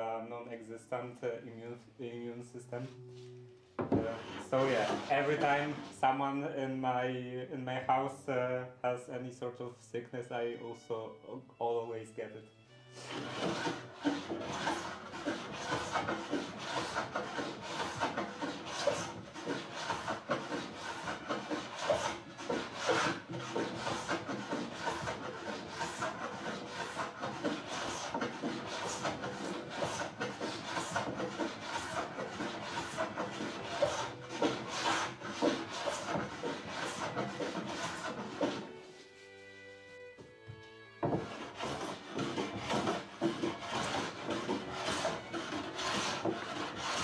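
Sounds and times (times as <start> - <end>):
hand tool rasping on wood: 4.0 - 6.0, 13.0 - 38.8, 41.0 - 47.0.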